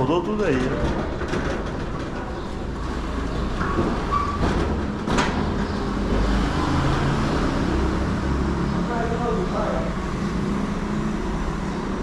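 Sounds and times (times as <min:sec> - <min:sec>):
sliding gate rumbling and scraping: 0:00.0 - 0:07.7
short squeak: 0:03.6 - 0:04.5.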